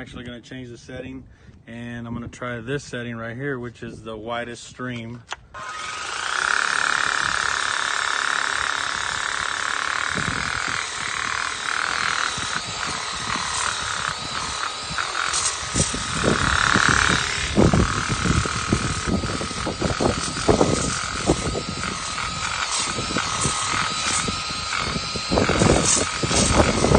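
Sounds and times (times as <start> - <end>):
pressure washer motor whine: 5.6 - 26.9.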